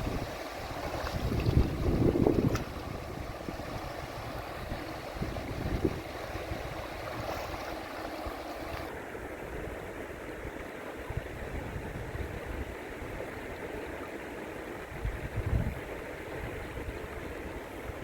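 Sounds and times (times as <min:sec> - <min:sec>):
river water flowing: 0:00.0 - 0:11.5
wind rumbling on microphone: 0:00.0 - 0:13.6, 0:14.8 - 0:18.0.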